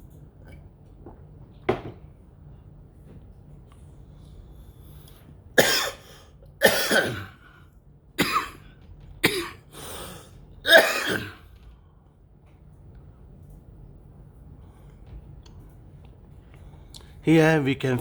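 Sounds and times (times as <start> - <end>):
person coughing: 5.6 - 7.5, 8.2 - 10.1, 10.7 - 11.5.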